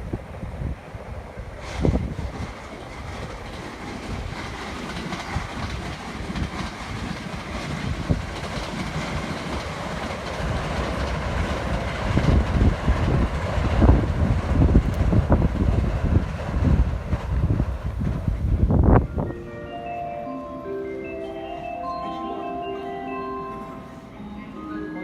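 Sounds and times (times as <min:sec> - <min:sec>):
wind buffeting microphone: 0:00.0 - 0:19.6
train rumbling on rails: 0:00.0 - 0:25.0.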